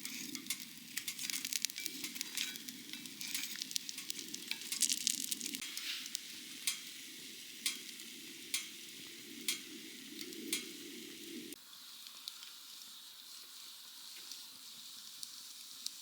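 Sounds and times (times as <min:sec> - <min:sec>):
food sizzling in a pan: 0:00.0 - 0:16.0
sharp ticks: 0:06.7 - 0:06.9, 0:07.7 - 0:08.0, 0:08.6 - 0:08.8.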